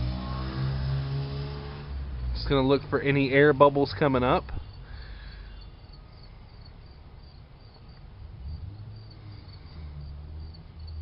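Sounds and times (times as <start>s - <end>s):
low steady rumble: 2.0s - 11.0s
crickets chirping: 3.9s - 11.0s.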